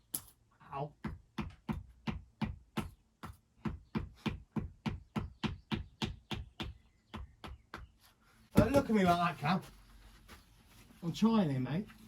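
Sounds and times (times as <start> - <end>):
hand tool knocking on stone: 8.6 - 9.2.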